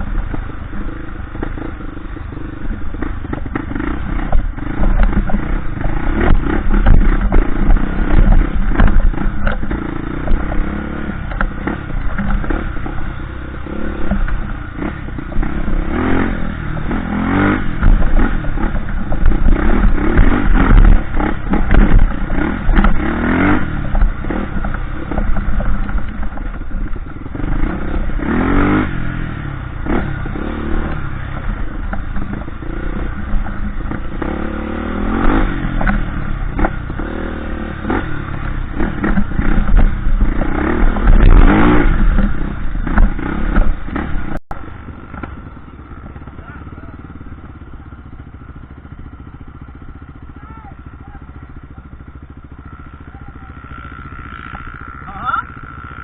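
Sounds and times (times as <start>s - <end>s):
dirt bike engine revving: 0.0s - 56.0s
clattering knocks over rough ground: 2.9s - 13.1s, 17.7s - 27.3s.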